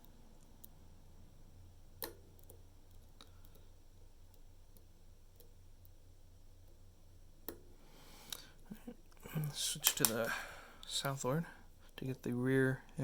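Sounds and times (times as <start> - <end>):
steady low hum: 0.0 - 13.0
lock pick clicking: 9.8 - 10.3.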